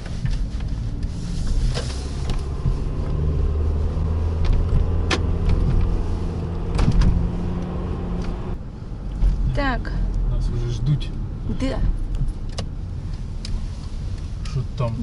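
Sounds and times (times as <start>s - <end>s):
car engine and road hum: 0.0s - 15.0s.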